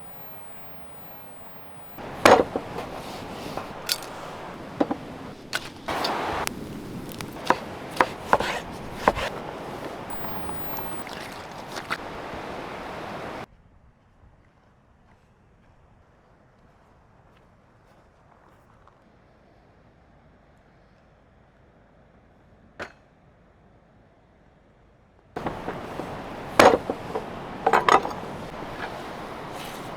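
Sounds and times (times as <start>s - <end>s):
outdoor background noise: 0.0s - 29.9s
blade chopping wood: 2.0s - 13.4s, 25.4s - 29.9s.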